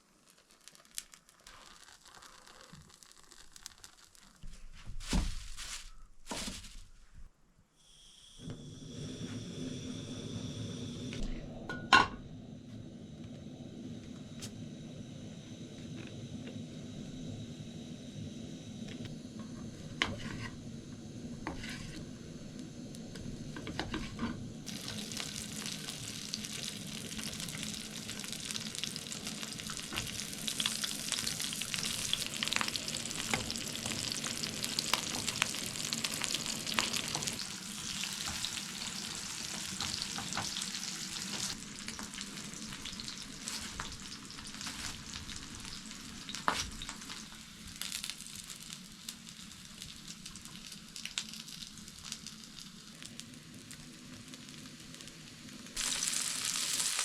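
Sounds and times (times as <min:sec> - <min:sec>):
food sizzling in a frying pan: 0:00.0 - 0:05.8, 0:20.0 - 0:57.0.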